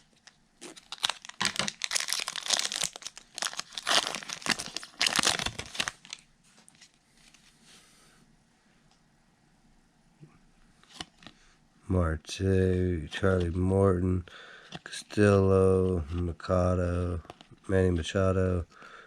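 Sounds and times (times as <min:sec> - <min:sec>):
foil wrapper crinkling: 0:00.0 - 0:06.3.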